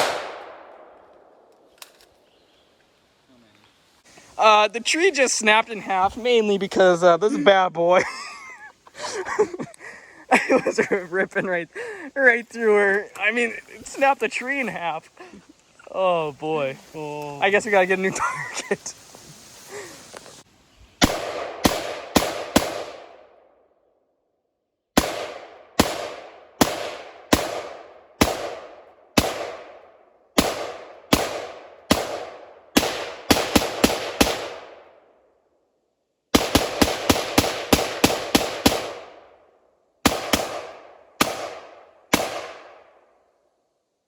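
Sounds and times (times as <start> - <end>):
rifle shots echoing: 0.0 - 2.0, 21.0 - 23.5, 25.0 - 35.1, 36.3 - 39.4, 40.0 - 43.1.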